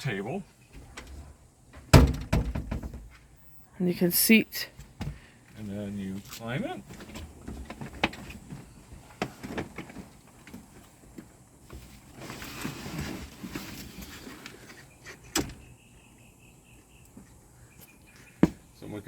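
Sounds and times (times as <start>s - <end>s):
rustling: 5.6s - 15.3s.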